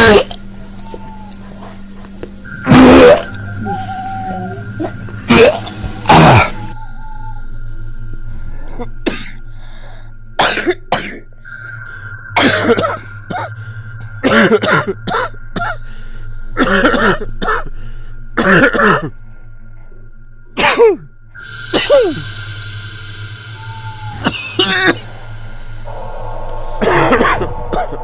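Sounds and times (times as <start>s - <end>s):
person coughing: 9.0s - 9.4s, 10.4s - 11.2s, 12.4s - 13.6s, 14.2s - 15.8s, 16.6s - 17.7s, 18.4s - 19.1s, 20.6s - 21.0s, 24.2s - 25.0s, 26.8s - 28.0s.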